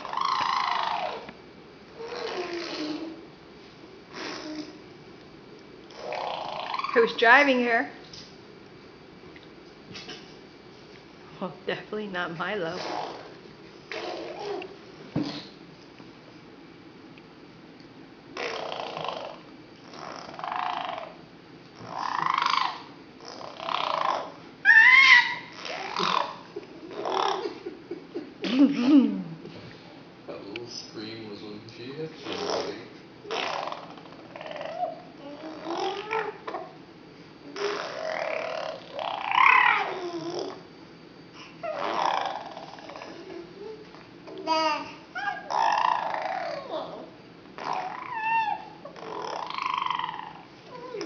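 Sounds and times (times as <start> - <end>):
baby grunting: 2.0 - 3.2, 4.1 - 4.8, 13.9 - 15.5, 21.8 - 27.6, 32.2 - 36.8, 37.5 - 40.6, 41.6 - 43.8, 44.4 - 51.0
baby squealing: 22.0 - 22.9, 24.0 - 27.5, 37.6 - 40.5, 41.6 - 43.2, 44.5 - 51.0.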